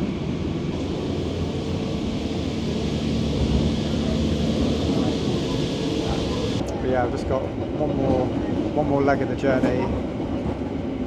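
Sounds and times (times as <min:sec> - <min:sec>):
train wheels rumbling: 0:00.3 - 0:10.8
faint steady hum: 0:00.7 - 0:06.6.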